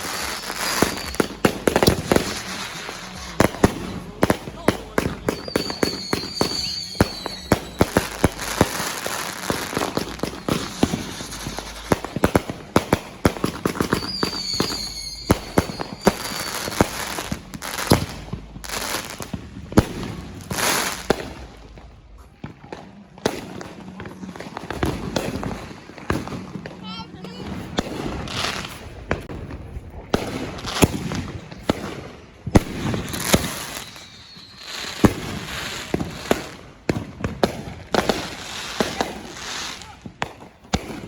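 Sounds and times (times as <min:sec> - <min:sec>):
high firework whistle: 0:00.0 - 0:03.9, 0:05.0 - 0:12.4, 0:13.4 - 0:19.3, 0:32.9 - 0:36.1
fireworks bangs and pops: 0:00.0 - 0:41.0
fireworks crackling: 0:00.0 - 0:41.0.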